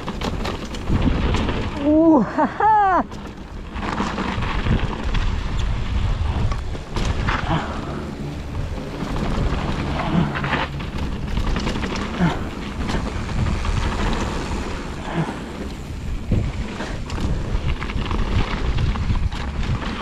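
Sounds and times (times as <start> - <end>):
bike clattering knocks: 0.0 - 1.9, 6.5 - 14.7
tyres on dirt: 0.0 - 20.0
wind buffeting microphone: 0.0 - 20.0.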